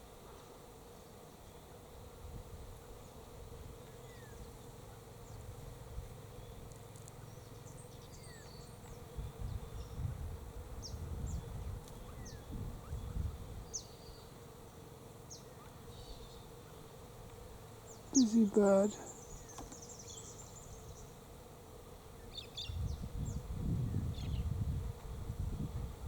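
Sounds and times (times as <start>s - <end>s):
bees buzzing: 0.0s - 26.0s
small birds chirping: 2.8s - 5.6s, 6.2s - 10.1s, 10.8s - 21.4s, 22.1s - 24.6s.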